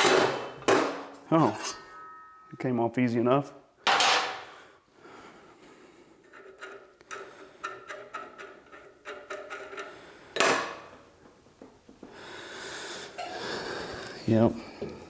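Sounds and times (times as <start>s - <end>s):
metal parts knocking and clinking: 3.9s - 4.4s.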